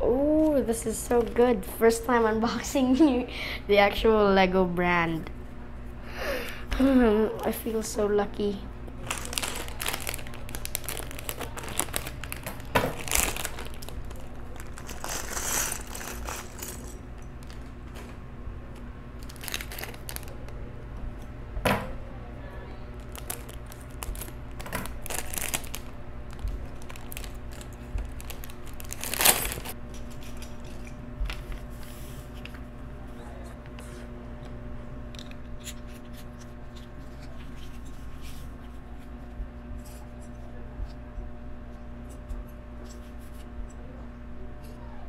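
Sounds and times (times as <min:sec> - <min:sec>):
faint hum: 0:00.0 - 0:45.0
plastic bags crinkling: 0:09.0 - 0:18.2, 0:19.2 - 0:20.5, 0:23.0 - 0:29.8.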